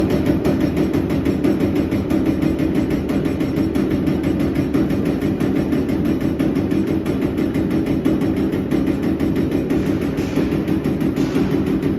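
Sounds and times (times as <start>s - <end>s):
machine hum: 9.6s - 11.9s
punch press punching sheet metal: 9.6s - 11.9s.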